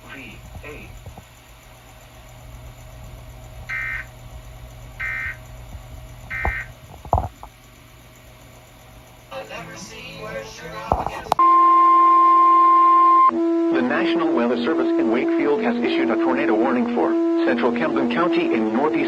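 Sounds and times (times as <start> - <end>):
steady low hum: 0.0 - 11.4.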